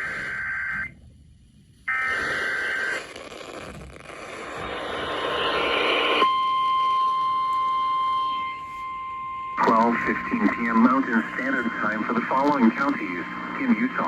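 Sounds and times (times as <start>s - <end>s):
static hiss: 1.8s - 6.3s, 9.6s - 14.0s
steady single-pitch alert tone: 5.0s - 12.3s.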